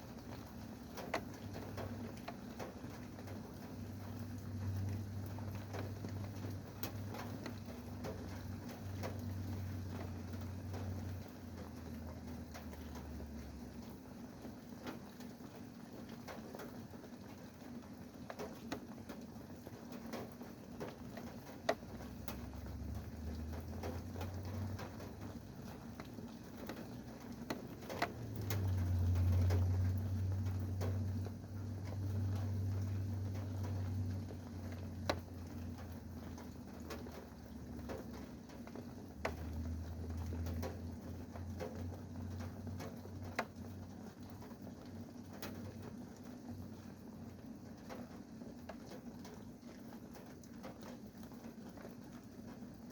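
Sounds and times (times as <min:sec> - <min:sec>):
rain falling: 0:00.0 - 0:52.9
raindrop ticks: 0:00.0 - 0:52.9.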